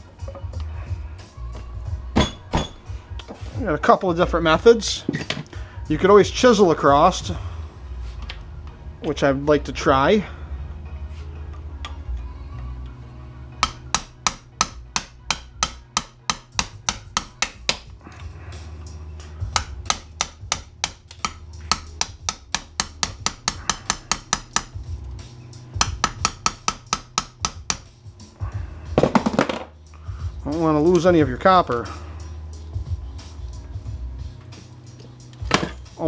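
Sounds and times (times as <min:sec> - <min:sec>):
hammer striking a chisel: 0:02.2 - 0:02.8, 0:13.6 - 0:17.9, 0:19.5 - 0:24.8, 0:25.8 - 0:27.9.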